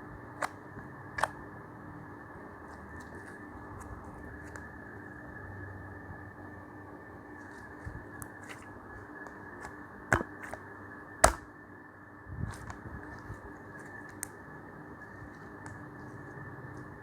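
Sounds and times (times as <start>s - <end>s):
slime being handled: 7.4s - 11.4s, 12.5s - 17.0s.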